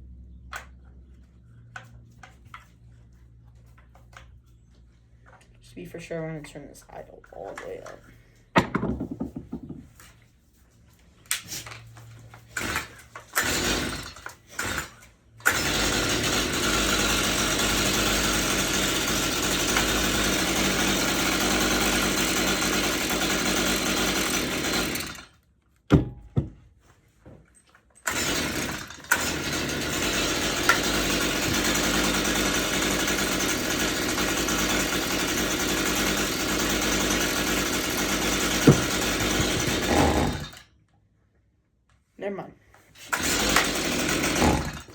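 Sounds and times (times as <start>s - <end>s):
chainsaw rope pulls: 11.4s - 25.4s, 28.0s - 40.7s, 43.0s - 44.9s
chainsaw idling: 12.6s - 25.3s, 28.1s - 40.6s, 43.1s - 44.9s.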